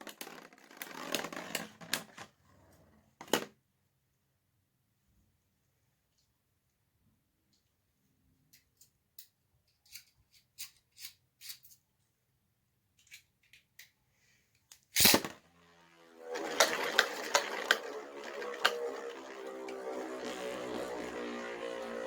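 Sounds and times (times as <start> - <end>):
spinning tops whirring: 0.0 - 1.9, 15.0 - 22.0
loud snap of launcher: 15.0 - 15.4
spinning tops clashing clicks: 15.0 - 22.0.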